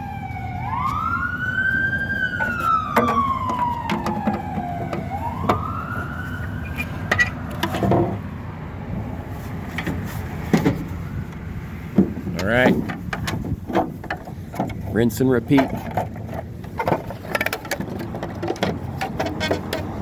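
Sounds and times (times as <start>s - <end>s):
emergency vehicle siren wailing: 0.0s - 7.6s.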